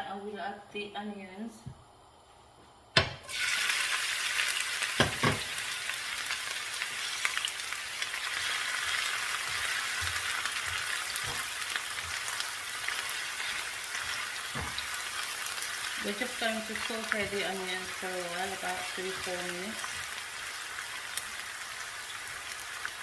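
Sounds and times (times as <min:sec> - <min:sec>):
sharp knocks: 0:03.0 - 0:03.3
onions sizzling in hot oil: 0:03.2 - 0:23.0.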